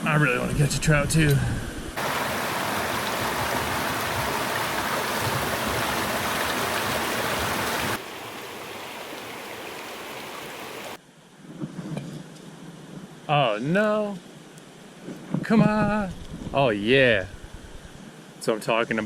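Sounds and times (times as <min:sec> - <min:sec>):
creek water rushing: 0:02.0 - 0:11.0.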